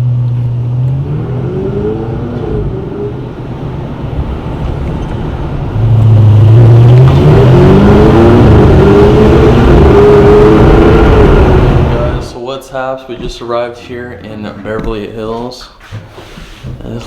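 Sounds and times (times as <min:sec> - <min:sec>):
car engine revving: 0:00.0 - 0:12.4.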